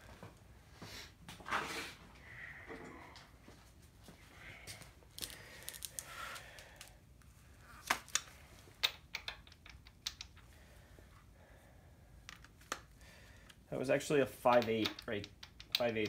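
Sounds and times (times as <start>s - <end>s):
metallic clicks of hand tools: 8.1s - 10.5s, 14.4s - 16.0s.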